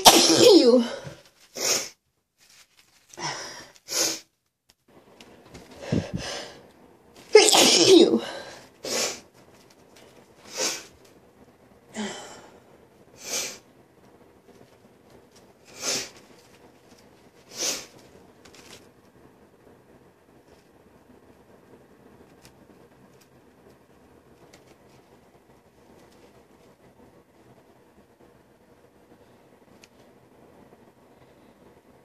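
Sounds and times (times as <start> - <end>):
woman sneezing: 0.0 - 1.9, 7.4 - 9.2.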